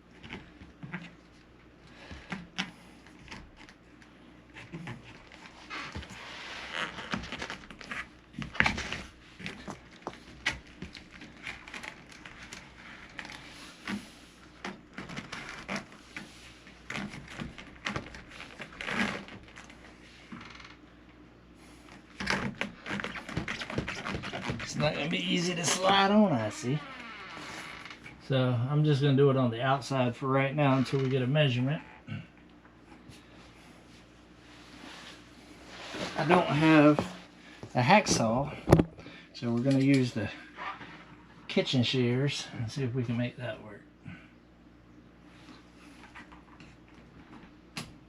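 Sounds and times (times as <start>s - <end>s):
crinkling and rustling: 0.0s - 28.2s.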